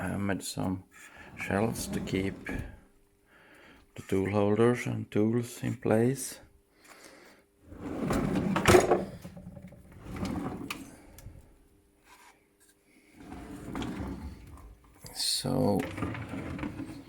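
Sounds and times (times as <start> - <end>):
drawer sliding and clunking: 1.2 - 2.8, 7.7 - 10.9, 13.2 - 14.9, 15.6 - 17.0.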